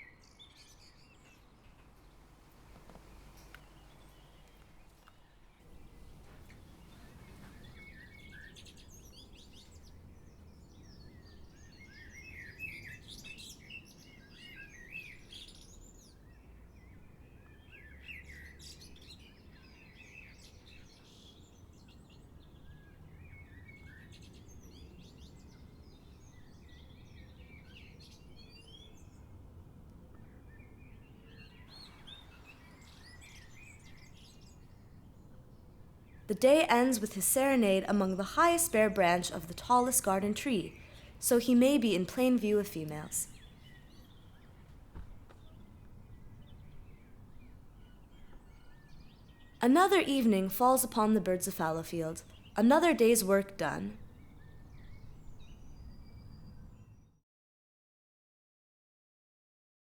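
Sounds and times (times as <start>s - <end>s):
birds chirping: 0.0s - 14.0s, 30.2s - 56.6s
faint low background rumble: 0.1s - 11.4s.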